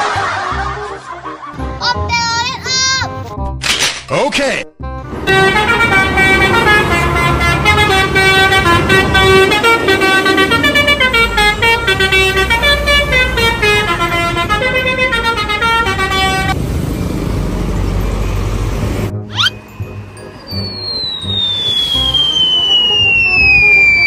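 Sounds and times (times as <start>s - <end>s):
musical bus horn melody: 4.8s - 16.6s.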